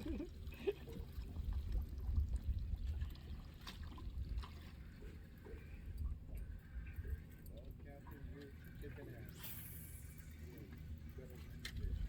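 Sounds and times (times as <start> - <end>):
wind rumble on microphone: 0.0 - 4.8, 11.6 - 12.0
water lapping at boat: 0.0 - 12.0.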